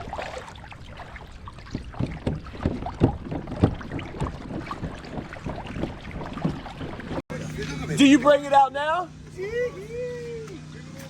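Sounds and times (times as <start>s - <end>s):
wind on microphone: 0.0s - 7.2s
water splashing and sloshing: 0.0s - 8.2s.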